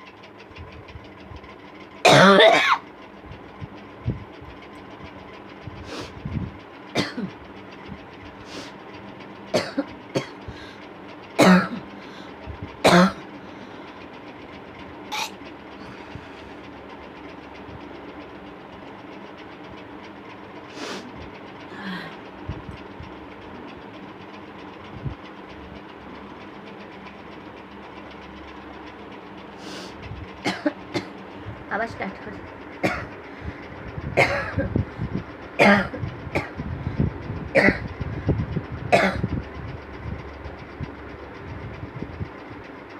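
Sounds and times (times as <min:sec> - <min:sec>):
electric fan hum: 0:00.0 - 0:42.9
person coughing: 0:02.1 - 0:02.8, 0:12.9 - 0:13.2, 0:35.6 - 0:36.5.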